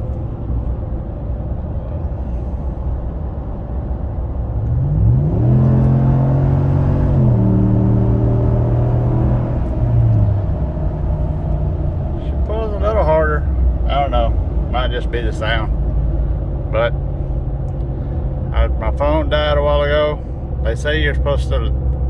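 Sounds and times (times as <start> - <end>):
truck engine accelerating: 0.0 - 22.0.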